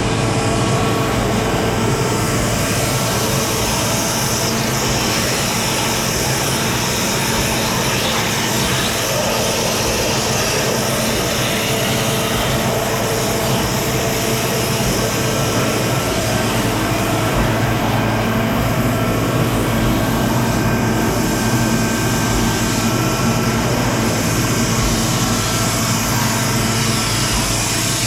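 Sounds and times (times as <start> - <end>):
low machine hum: 0.0 - 28.0
water jet high-pressure hiss: 2.6 - 28.0.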